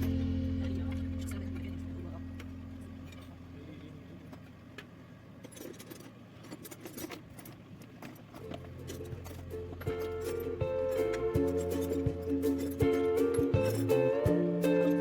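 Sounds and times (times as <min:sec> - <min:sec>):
music: 0:00.0 - 0:02.2, 0:09.0 - 0:15.0.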